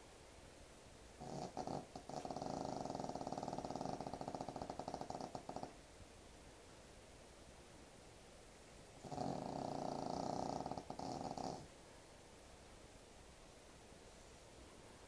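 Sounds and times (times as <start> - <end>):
pet snoring: 1.2 - 5.8, 9.0 - 11.7.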